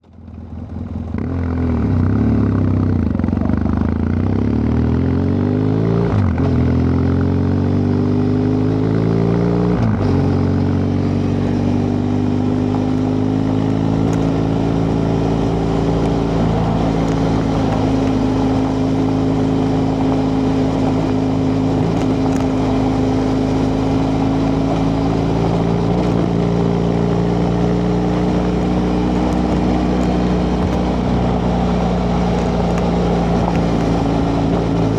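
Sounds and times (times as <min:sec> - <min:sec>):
motorcycle engine accelerating: 0:00.1 - 0:34.9.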